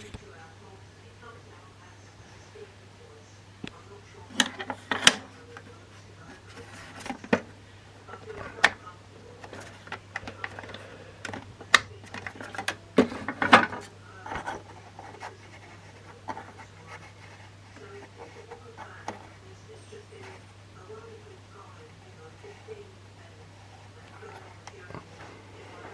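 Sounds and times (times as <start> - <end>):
low steady hum: 0.0 - 25.9
hard objects clicking and scraping: 9.4 - 16.6.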